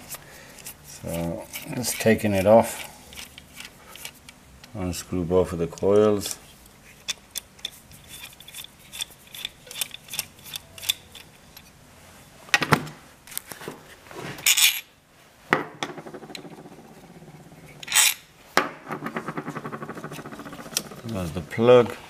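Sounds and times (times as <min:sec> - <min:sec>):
knocks and rattles: 0:15.5 - 0:21.2.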